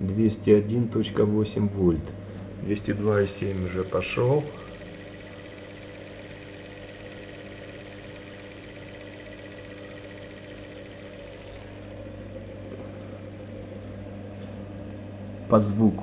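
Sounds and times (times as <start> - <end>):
electric motor humming: 2.8 - 12.5.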